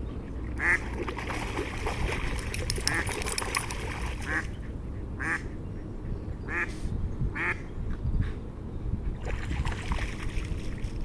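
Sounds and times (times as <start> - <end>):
ducks quacking: 0.6 - 0.9, 4.2 - 4.6, 5.2 - 5.6, 6.5 - 6.7.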